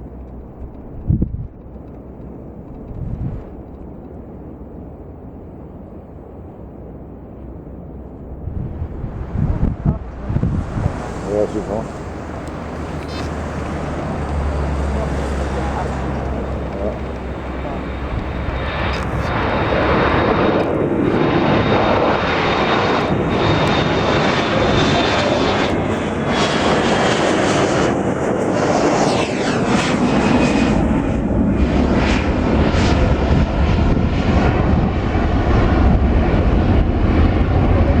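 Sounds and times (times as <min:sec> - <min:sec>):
airplane engines at takeoff power: 0:00.0 - 0:38.0.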